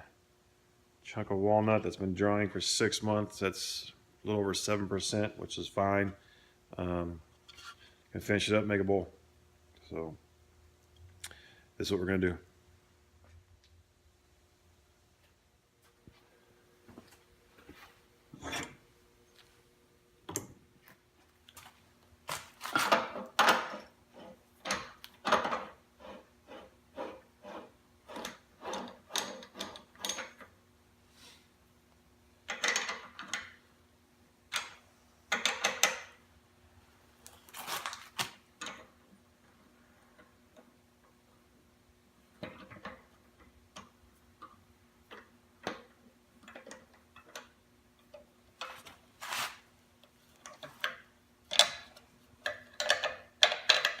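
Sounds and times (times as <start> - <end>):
gouge scraping spinning wood: 25.9 - 29.6.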